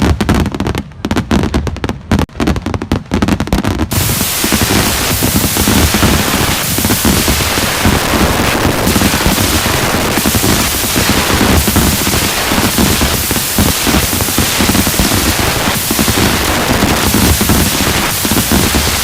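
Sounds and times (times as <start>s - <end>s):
fireworks popping and crackling: 0.0s - 19.0s.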